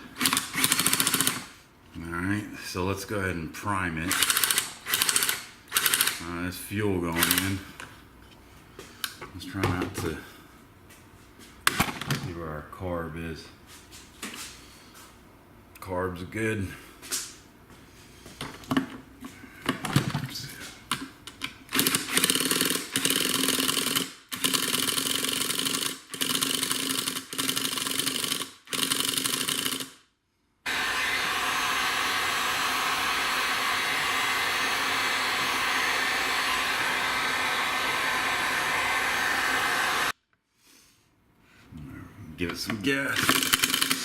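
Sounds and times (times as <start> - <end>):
electric starter cranking: 0.0 - 1.5, 4.1 - 6.2, 7.2 - 7.6, 21.7 - 30.0, 30.7 - 40.1, 43.1 - 44.0
small engine running: 4.1 - 6.2, 21.8 - 29.9, 30.7 - 40.1, 43.2 - 44.0.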